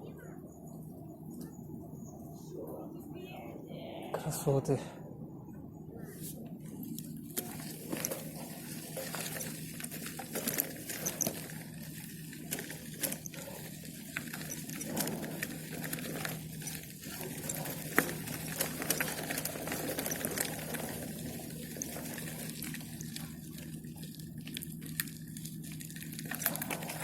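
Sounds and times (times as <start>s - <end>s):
steady low hum: 0.0s - 27.0s
bicycle rattling and clicking: 6.7s - 27.0s.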